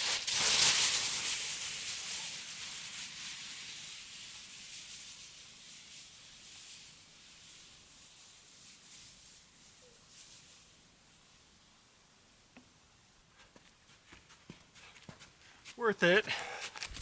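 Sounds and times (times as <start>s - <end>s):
sliding on wet snow hiss: 0.0s - 11.8s.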